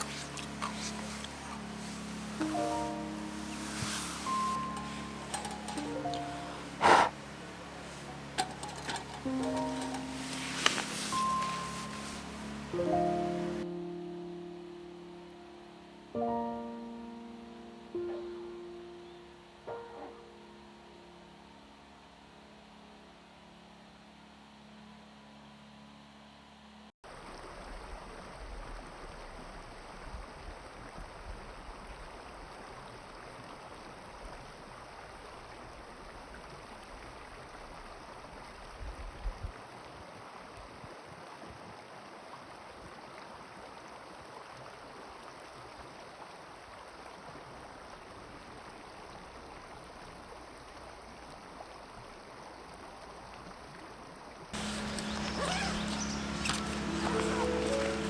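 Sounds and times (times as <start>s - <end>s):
river flowing: 0.0s - 26.6s, 54.6s - 58.0s.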